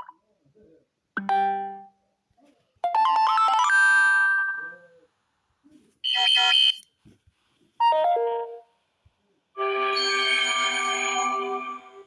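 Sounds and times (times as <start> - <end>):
rising bell-like electronic notes: 10.0 - 12.0.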